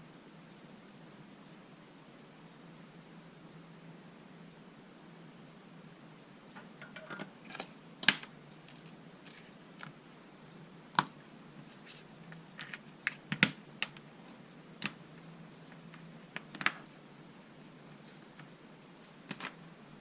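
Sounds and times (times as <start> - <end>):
small parts clicking and tapping: 6.6 - 10.0.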